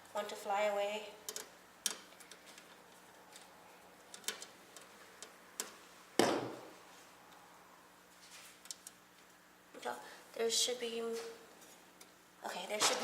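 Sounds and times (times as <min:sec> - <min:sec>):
small metal clicks: 0:01.2 - 0:05.8.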